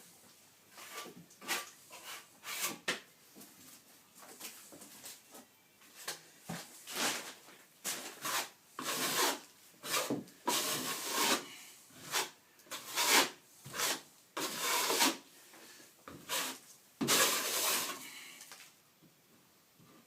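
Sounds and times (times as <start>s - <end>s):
trowel scraping plaster: 0.8s - 2.9s, 6.9s - 15.2s, 16.1s - 18.1s.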